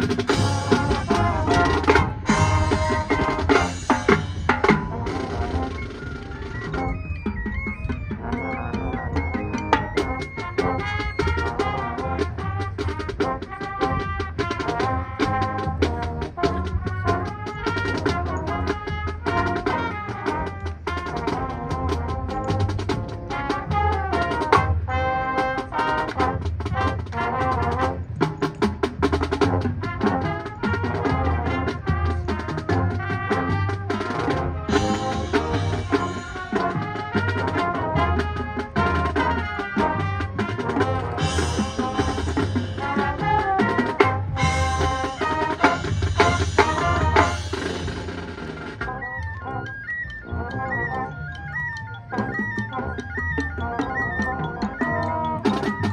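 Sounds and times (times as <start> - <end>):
drum hits: 0.0 - 5.7, 39.9 - 48.8
brass section chords: 0.0 - 5.8, 10.6 - 28.2, 29.5 - 49.1
drum line: 0.0 - 49.6, 52.0 - 55.9
marching band playing: 0.0 - 55.9.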